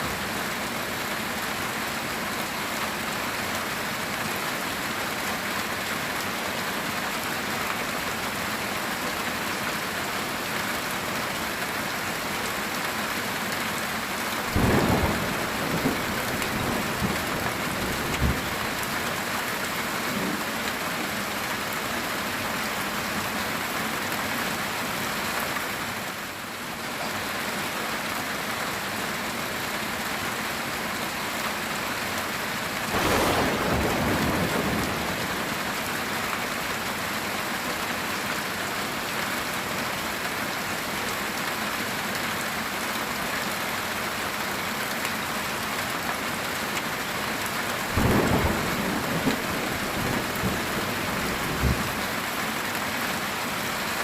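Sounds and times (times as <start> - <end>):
heavy rain on a tin roof: 0.0 - 54.0
thunder rumbling: 14.5 - 18.9, 32.9 - 35.6, 47.9 - 52.0
sharp thunder crack: 33.0 - 35.2.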